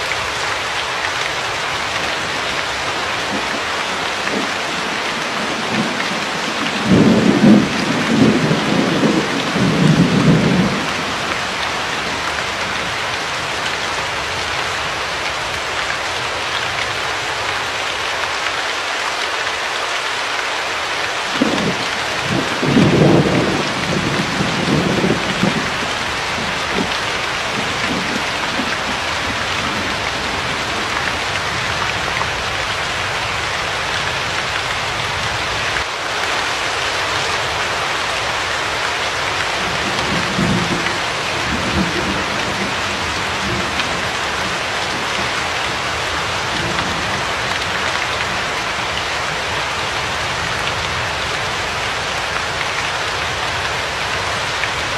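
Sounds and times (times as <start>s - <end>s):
heavy rain: 0.0s - 54.9s
thunder rumbling: 3.0s - 12.9s, 21.4s - 33.0s, 39.5s - 49.5s.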